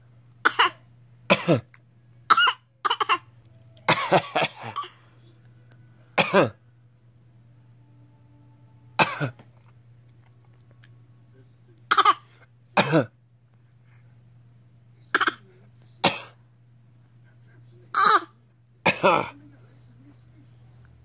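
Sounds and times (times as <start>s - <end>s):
baby fake coughing: 0.4s - 1.7s, 2.3s - 5.0s, 6.2s - 6.6s, 9.0s - 9.4s, 11.9s - 13.2s, 15.1s - 16.4s, 17.9s - 19.3s
man coughing: 0.5s - 1.7s, 3.9s - 5.1s, 6.2s - 6.6s, 9.0s - 9.4s, 11.9s - 13.2s, 15.1s - 16.4s, 18.0s - 19.4s.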